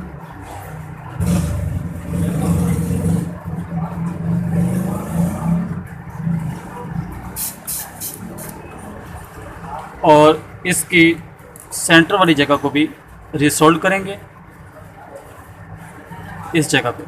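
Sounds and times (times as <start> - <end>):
engine revving: 1.1 - 7.2.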